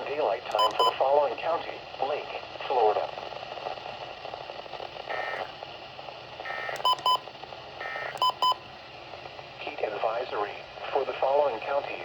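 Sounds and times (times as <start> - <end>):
radio hiss: 0.0 - 6.9, 7.8 - 8.2, 9.1 - 12.0.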